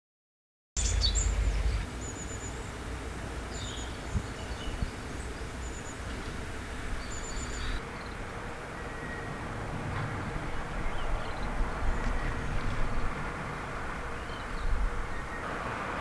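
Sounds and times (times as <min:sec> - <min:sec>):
small birds chirping: 0:00.8 - 0:09.5, 0:14.0 - 0:15.5
outdoor background hiss: 0:00.8 - 0:16.0.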